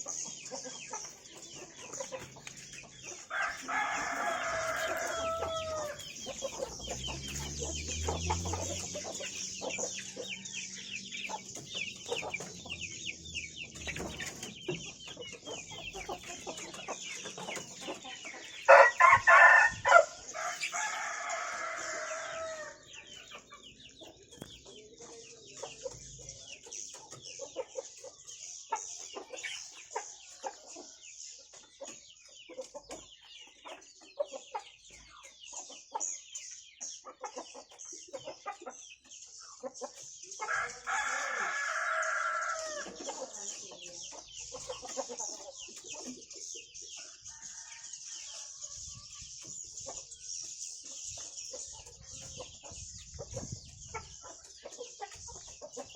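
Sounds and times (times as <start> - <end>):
rooster crowing: 3.3 - 6.1, 18.7 - 22.8, 40.5 - 42.8.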